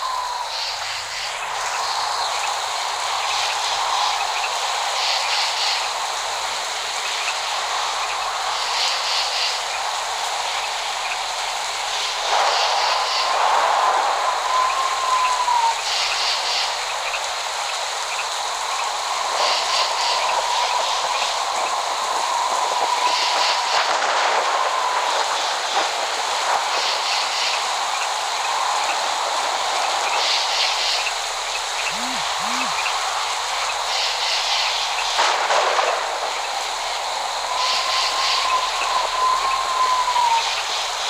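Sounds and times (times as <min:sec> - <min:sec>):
rain hissing: 0:00.0 - 0:41.0
short high-pitched bursts: 0:31.8 - 0:32.9.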